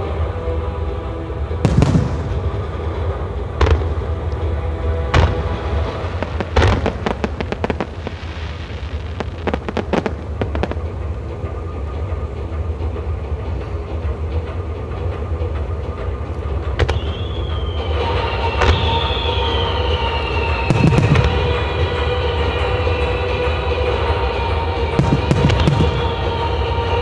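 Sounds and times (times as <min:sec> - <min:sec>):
low rumble: 0:00.1 - 0:18.0
fireworks bursting: 0:01.6 - 0:11.0, 0:16.8 - 0:22.6, 0:24.8 - 0:27.0.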